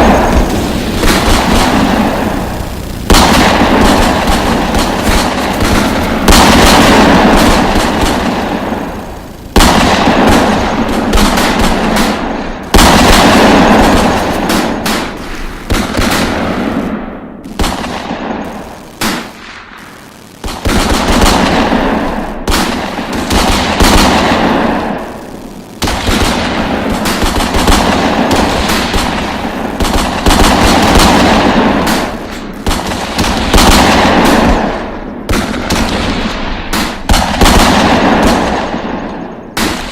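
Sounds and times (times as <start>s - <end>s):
automatic gunfire: 0.0s - 39.9s.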